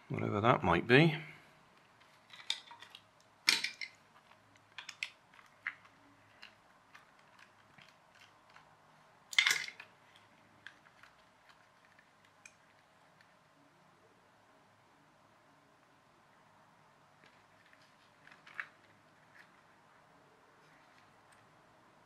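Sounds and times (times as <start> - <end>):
plastic parts clicking: 1.8 - 8.7, 9.3 - 13.3, 17.2 - 19.6.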